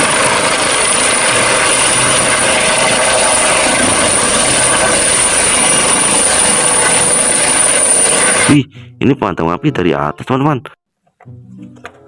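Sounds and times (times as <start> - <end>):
helicopter rotor and engine: 0.0 - 8.5.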